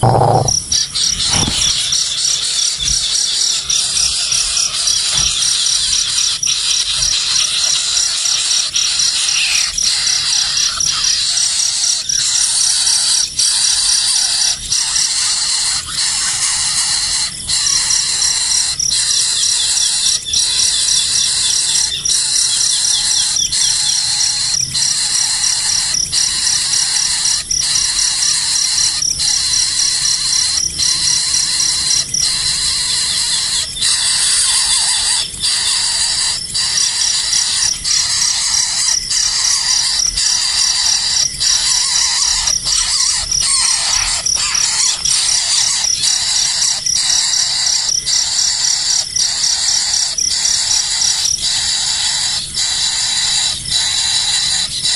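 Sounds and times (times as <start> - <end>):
nestling birds begging: 0.0 - 3.5, 32.2 - 54.9.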